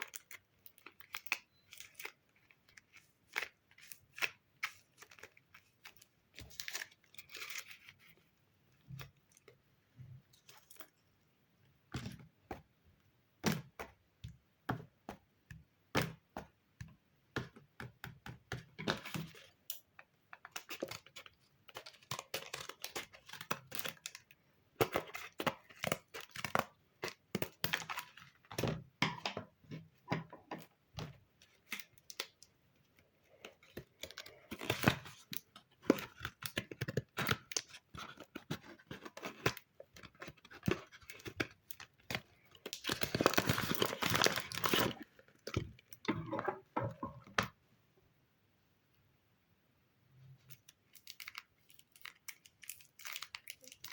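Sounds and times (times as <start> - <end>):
paper crinkling: 0.0 - 8.3, 33.3 - 46.5.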